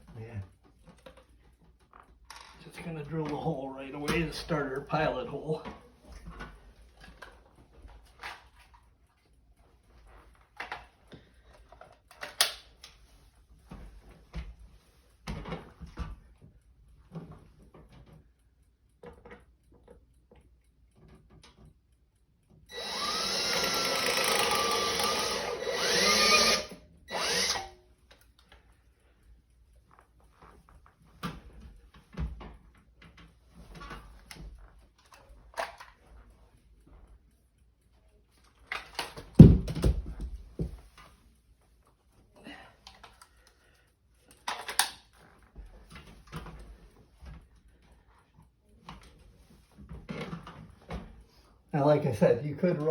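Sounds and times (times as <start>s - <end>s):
cordless drill boring: 22.7s - 27.8s
hardware clicks and knocks: 38.7s - 41.1s.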